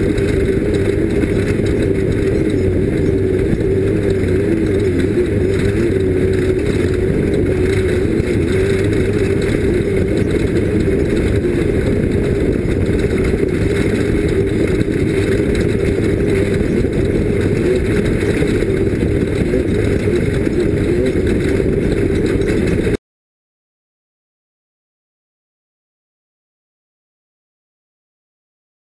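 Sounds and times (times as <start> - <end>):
mechanical and road noise rumble: 0.0 - 23.0
race vehicle engine under load: 0.0 - 23.0.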